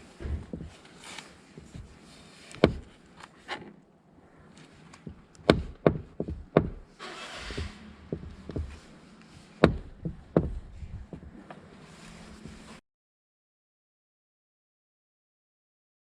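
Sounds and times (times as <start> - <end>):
tools knocking on car door: 2.6 - 2.9, 5.1 - 6.9, 7.6 - 8.8, 9.6 - 11.4.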